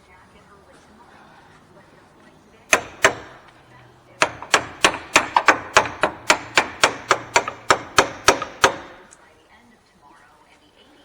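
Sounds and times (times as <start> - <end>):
hammer blows on steel: 1.5 - 9.2.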